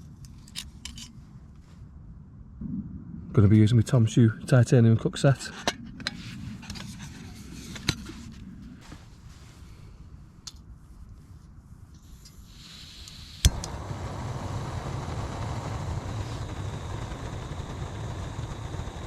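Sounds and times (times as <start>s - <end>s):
gas hissing: 12.0s - 19.0s
gas burner running: 12.4s - 19.0s
piezo igniter click: 13.0s - 18.8s.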